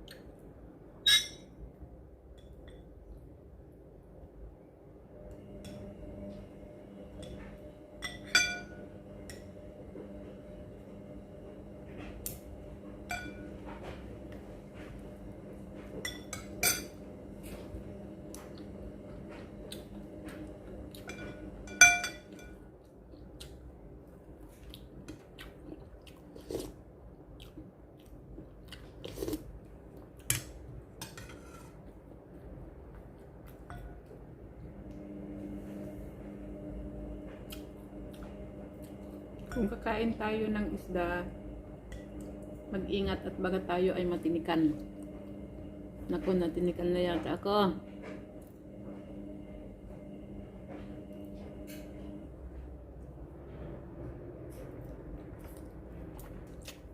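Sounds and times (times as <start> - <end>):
steady low hum: 0.0 - 56.9
utensils clinking on dishes: 1.0 - 1.6, 8.0 - 8.8, 13.1 - 13.6, 16.0 - 17.0, 21.0 - 22.6.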